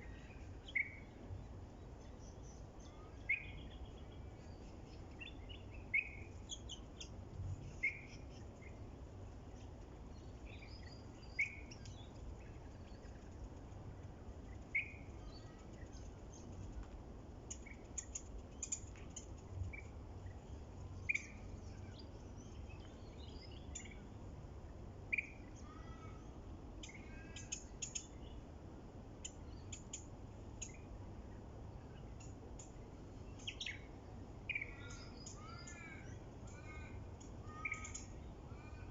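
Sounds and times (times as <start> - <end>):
low rumble of wind: 0.0 - 38.9
birds chirping and calling: 2.0 - 8.8, 9.6 - 13.4, 14.5 - 16.6, 17.5 - 24.1, 25.1 - 28.4, 29.2 - 30.9, 31.9 - 33.9, 34.5 - 38.9
high bird chirps: 37.5 - 38.2.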